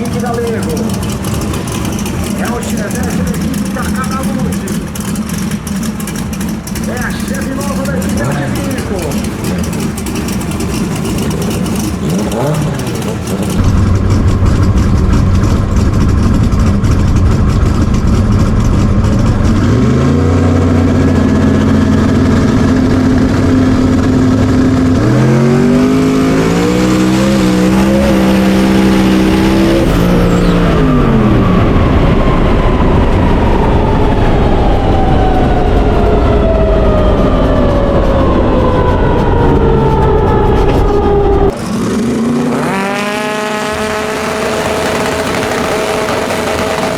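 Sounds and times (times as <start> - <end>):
racing car engine revving: 0.0 - 46.9
long falling whine: 13.5 - 41.6.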